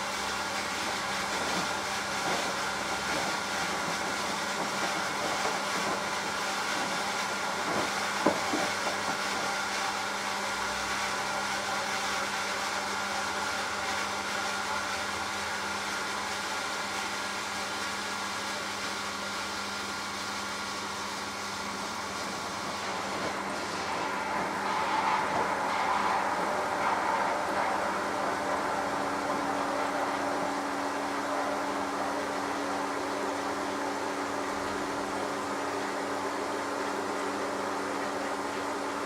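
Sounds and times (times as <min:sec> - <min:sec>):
washing machine humming: 0:00.0 - 0:39.0
washing machine knock: 0:06.8 - 0:09.2.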